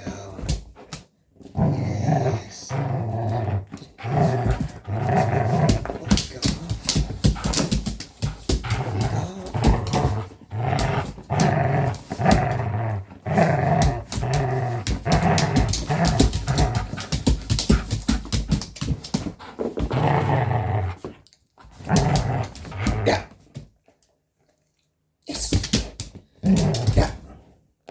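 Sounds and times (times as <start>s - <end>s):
dog growling: 1.4s - 18.2s, 19.6s - 21.1s, 21.8s - 23.4s.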